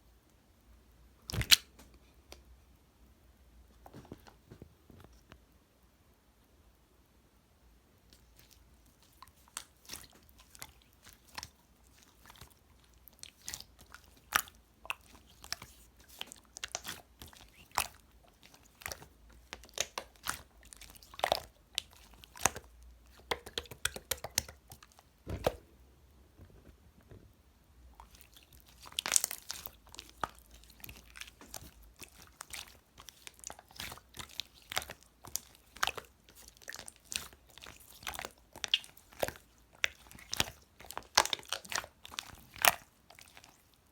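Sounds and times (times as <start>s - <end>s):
slime popping and crackling: 1.3s - 1.7s, 8.2s - 25.6s, 28.0s - 43.8s.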